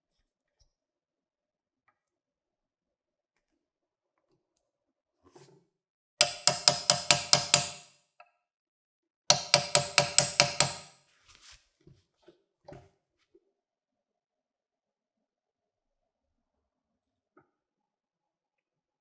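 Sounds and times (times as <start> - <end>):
sharp metallic strikes ringing: 6.2 - 7.9.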